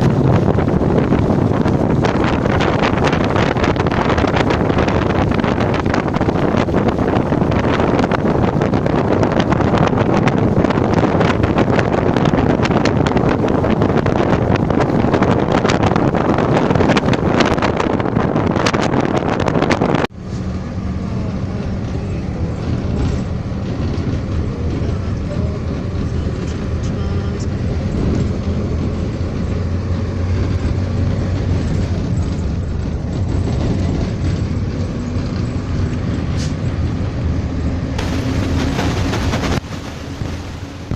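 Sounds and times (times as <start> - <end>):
diesel bus engine droning: 0.0 - 40.9
loud rushing noise: 36.1 - 40.9.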